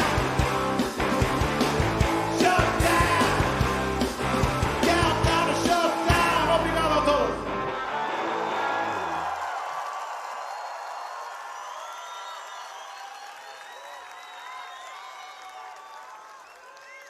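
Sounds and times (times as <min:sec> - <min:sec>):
distorted electric guitars: 0:00.0 - 0:09.2
shouted vocals: 0:02.2 - 0:03.6.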